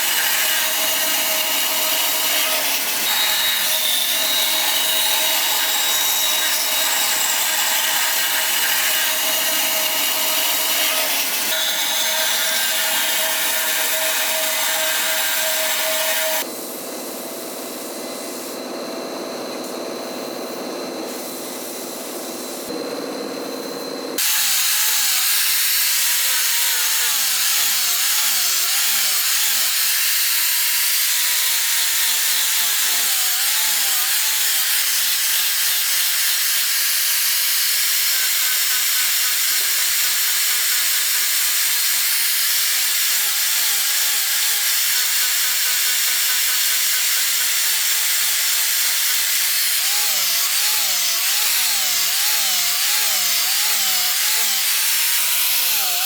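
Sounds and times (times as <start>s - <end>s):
power tool grinding metal: 0.0s - 16.5s, 24.2s - 56.0s.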